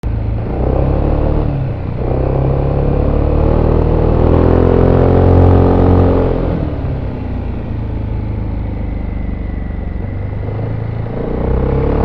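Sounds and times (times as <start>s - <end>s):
scooter engine while riding: 0.1s - 12.0s.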